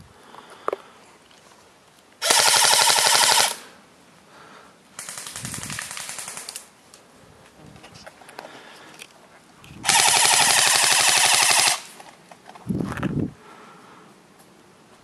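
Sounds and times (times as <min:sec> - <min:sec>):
airsoft rifle bursts: 0:02.2 - 0:03.7, 0:09.8 - 0:12.0.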